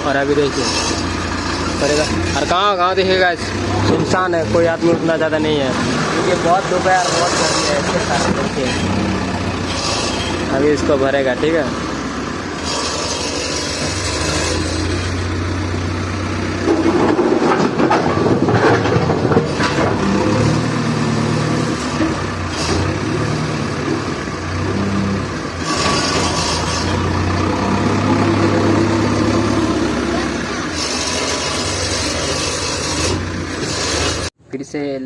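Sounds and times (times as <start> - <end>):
rattle and scrape: 0.0 - 11.6, 12.6 - 15.3, 16.5 - 20.7, 25.5 - 27.6, 30.1 - 34.3
diesel engine running: 0.0 - 34.4.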